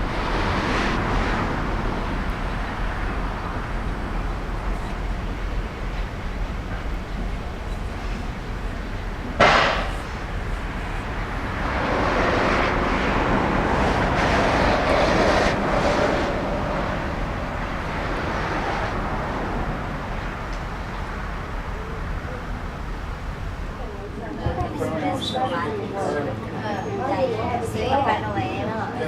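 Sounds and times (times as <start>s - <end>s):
train rumbling on rails: 0.0s - 26.5s
sharp bang: 9.4s - 10.2s.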